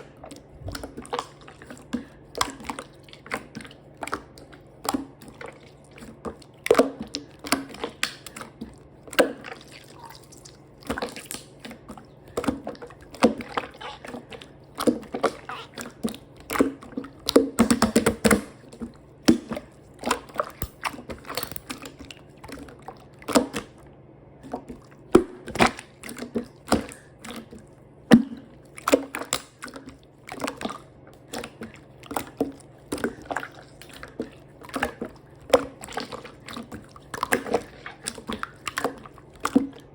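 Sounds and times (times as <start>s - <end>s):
slime squishing with wet clicks: 0.0s - 39.9s.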